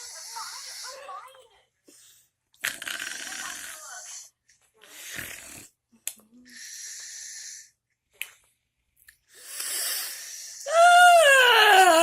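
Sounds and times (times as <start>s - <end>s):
person fake snoring: 2.6s - 4.1s.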